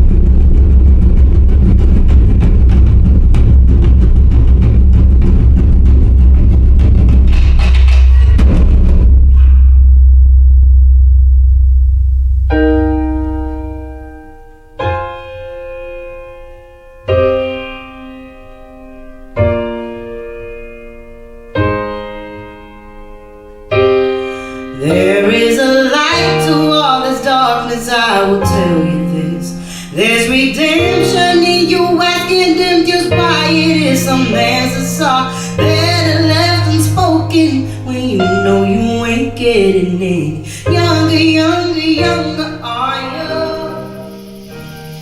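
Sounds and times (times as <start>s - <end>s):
bass and keyboards: 0.0s - 45.0s
piano chords ringing: 8.4s - 45.0s
woman singing: 24.8s - 44.2s.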